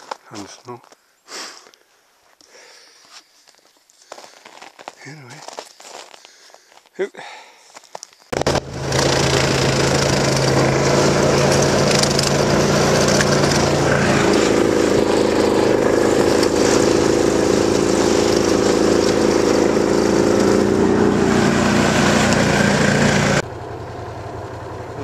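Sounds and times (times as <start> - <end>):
snowmobile engine running: 8.3 - 25.0.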